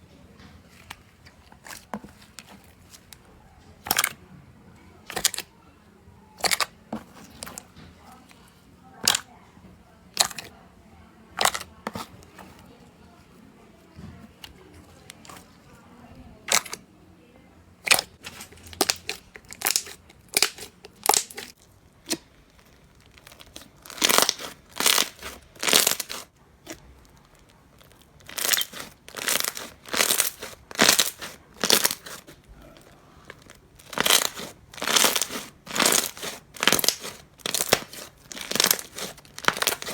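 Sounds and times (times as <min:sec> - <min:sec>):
crunchy slime crackling: 0:00.7 - 0:03.2, 0:03.8 - 0:04.2, 0:05.0 - 0:05.6, 0:06.3 - 0:09.4, 0:10.1 - 0:10.6, 0:11.4 - 0:13.2, 0:16.3 - 0:16.8, 0:17.8 - 0:39.9.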